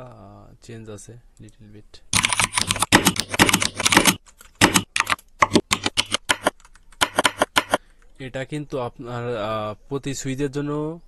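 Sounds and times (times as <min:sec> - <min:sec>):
mechanical keyboard keystrokes: 0:02.2 - 0:07.8.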